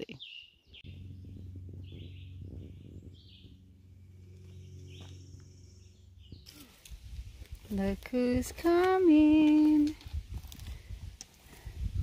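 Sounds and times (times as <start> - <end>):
steady low hum: 0.7 - 8.6.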